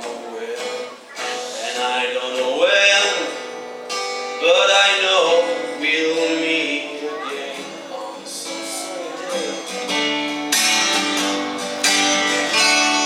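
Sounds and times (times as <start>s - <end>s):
person singing: 0.0s - 3.5s, 4.4s - 9.7s
acoustic guitar strummed: 0.0s - 13.0s.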